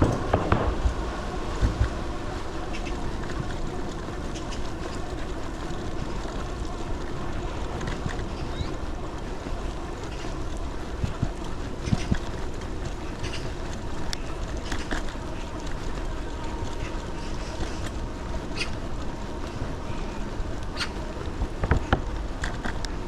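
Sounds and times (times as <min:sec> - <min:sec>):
vehicle road noise: 0:00.0 - 0:23.0
wind rush on microphone: 0:00.0 - 0:23.0.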